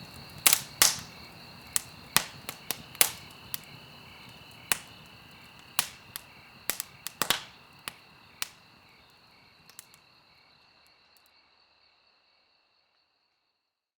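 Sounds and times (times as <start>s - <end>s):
campfire crackling and popping: 0.0s - 10.0s
insects chirring: 0.0s - 13.6s.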